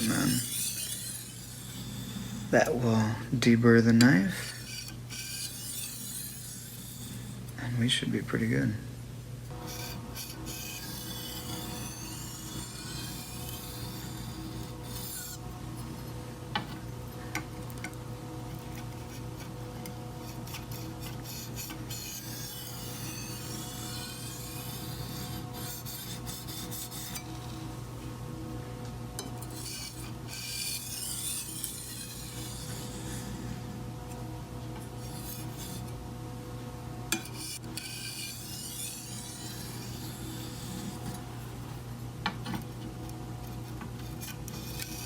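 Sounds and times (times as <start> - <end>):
knife scraping on whetstone: 0.0 - 2.8, 4.0 - 7.4, 9.5 - 15.9, 18.5 - 27.8, 29.2 - 33.8, 34.9 - 36.0, 37.1 - 41.6, 43.4 - 45.0
steady low hum: 0.0 - 45.0.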